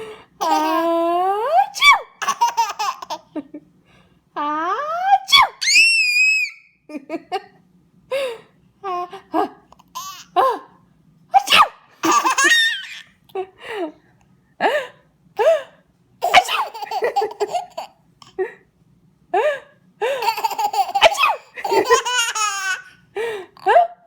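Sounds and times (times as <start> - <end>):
baby laughing: 0.4 - 1.0, 1.7 - 3.4, 9.8 - 10.4, 11.4 - 13.1, 16.2 - 18.0, 20.1 - 23.0.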